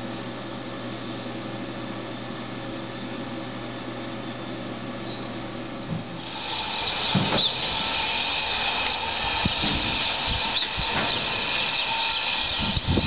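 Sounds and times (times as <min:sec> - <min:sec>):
strong gusting wind: 0:12.4 - 0:13.0.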